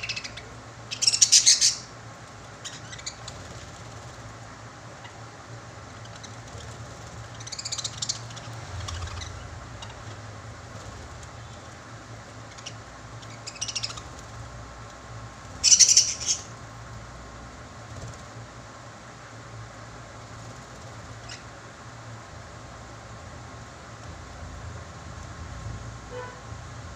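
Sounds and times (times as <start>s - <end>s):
birds chirping shrilly: 0.0s - 3.8s, 6.0s - 10.2s, 12.4s - 14.2s, 15.5s - 16.6s
steady low hum: 0.0s - 26.9s.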